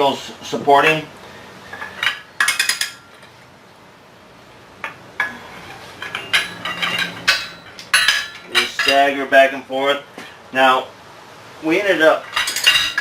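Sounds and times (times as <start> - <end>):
wrench clinking on steel bolts: 6.0 - 9.1, 12.2 - 13.0.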